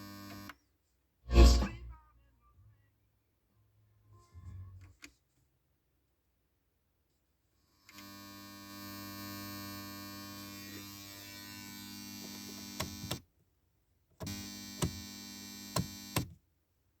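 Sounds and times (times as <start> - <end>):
electrical buzz from car speakers: 14.2 - 16.3.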